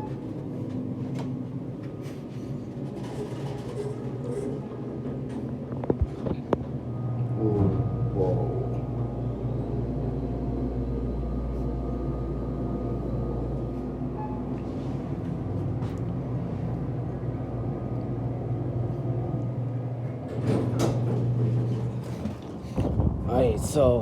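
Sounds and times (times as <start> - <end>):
elevator mechanical hum: 0.0 - 24.0
sliding doors opening: 19.9 - 23.1.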